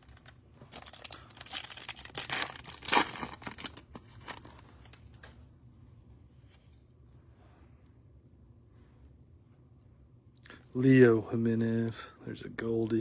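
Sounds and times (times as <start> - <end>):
foil wrapper tearing and crinkling: 0.0 - 5.3.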